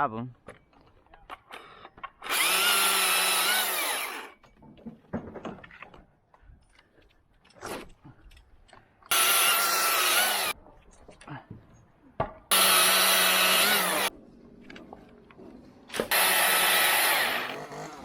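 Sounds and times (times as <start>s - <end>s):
electric chainsaw motor whining: 2.2s - 4.3s, 9.1s - 10.6s, 12.5s - 14.1s, 16.1s - 18.0s
light knocks and clatter: 4.4s - 6.1s.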